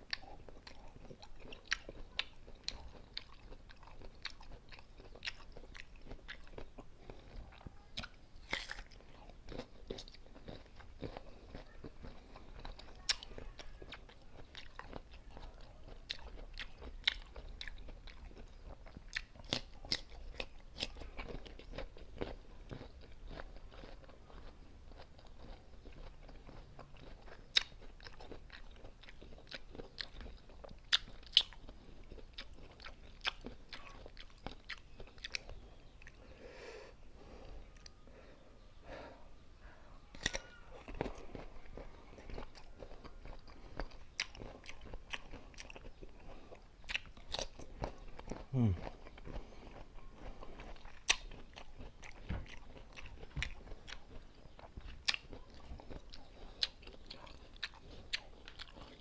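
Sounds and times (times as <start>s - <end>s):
person chewing crisp fruit: 0.0s - 59.0s.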